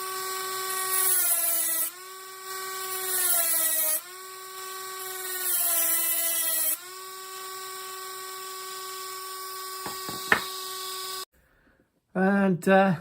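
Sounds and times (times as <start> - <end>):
rotary tool whining while grinding metal: 0.0 - 11.3.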